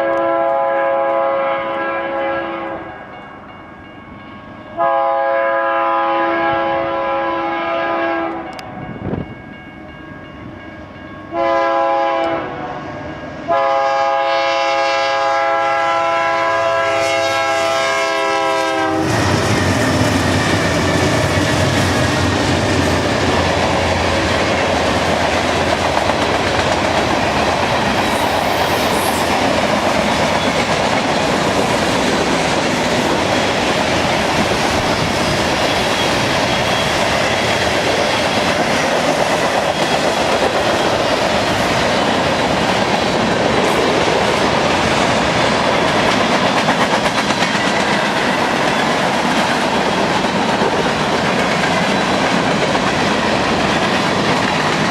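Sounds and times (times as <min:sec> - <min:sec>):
train wheels rumbling on rails: 0:14.8 - 0:54.9.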